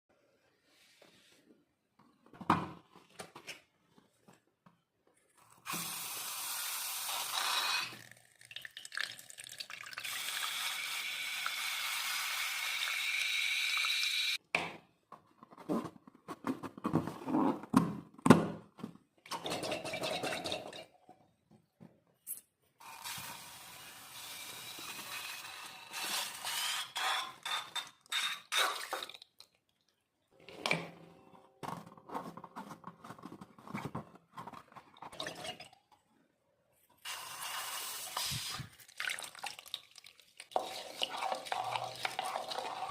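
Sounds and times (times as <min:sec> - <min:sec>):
air hissing out of balloon: 0:37.3 - 0:38.7.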